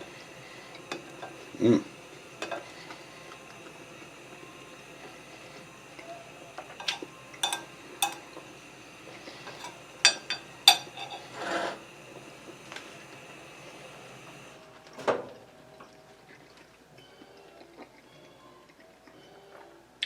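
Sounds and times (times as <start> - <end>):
cutlery clinking on a dish: 2.4 - 2.7, 6.8 - 8.3, 9.5 - 11.8
cutlery scraping: 2.4 - 2.7, 6.8 - 8.3, 9.3 - 11.8.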